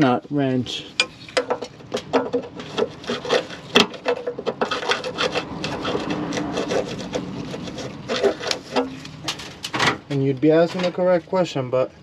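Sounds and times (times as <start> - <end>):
metal scraping: 0.8 - 10.0.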